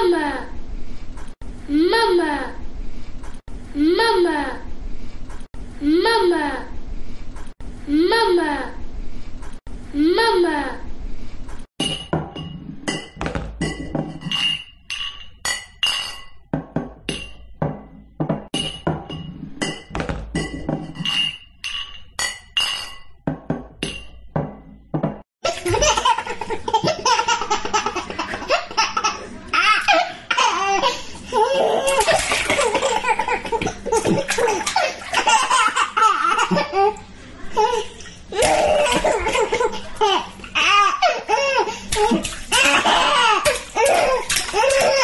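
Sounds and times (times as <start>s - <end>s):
glass bottles clinking: 11.8s - 25.2s
baby laughing and babbling: 25.5s - 45.0s.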